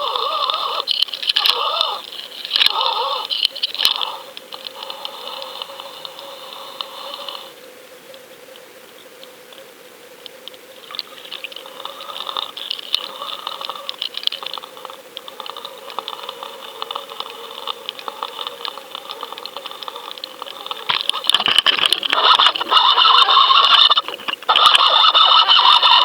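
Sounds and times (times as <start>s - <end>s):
small clicks and rattles: 0.3s - 7.5s, 10.9s - 26.0s
underwater water rushing: 10.8s - 26.0s.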